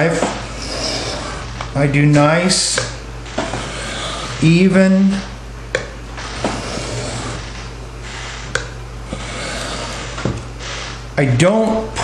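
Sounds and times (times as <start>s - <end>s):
knife scraping on a hone: 0.2s - 1.5s, 3.4s - 4.6s, 6.2s - 8.5s, 9.1s - 11.0s.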